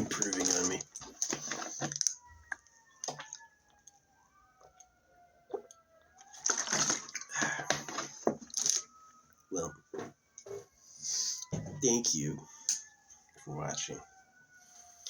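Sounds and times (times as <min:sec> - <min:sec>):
liquid sloshing in a bottle: 0:00.0 - 0:02.2, 0:06.2 - 0:08.8.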